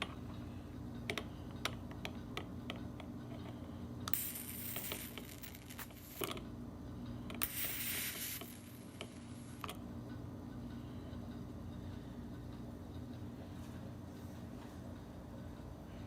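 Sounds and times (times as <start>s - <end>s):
electric arc lighter buzzing: 4.1s - 6.4s, 7.3s - 9.8s.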